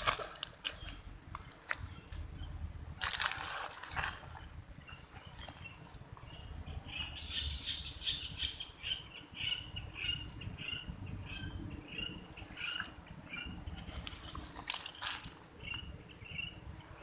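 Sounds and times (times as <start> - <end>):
bird high-pitched calls: 4.3 - 16.7.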